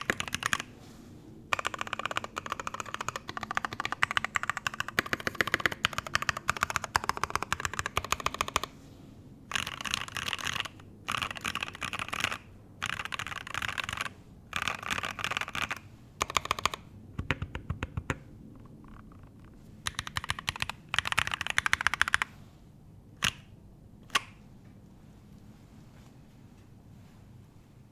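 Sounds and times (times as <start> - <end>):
typing on mechanical keyboard: 0.0 - 0.7, 1.5 - 8.7, 9.5 - 22.3, 23.2 - 24.4.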